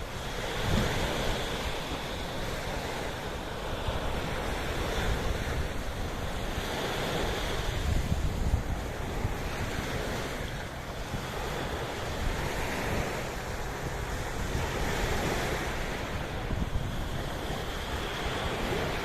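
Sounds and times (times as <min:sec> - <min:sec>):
sea waves washing in: 0:00.0 - 0:19.0
wind rumbling on microphone: 0:00.0 - 0:19.0.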